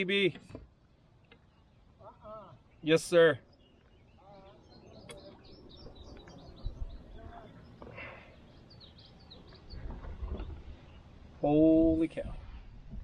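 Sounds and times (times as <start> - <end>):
songbirds chirping: 0.0 - 13.0.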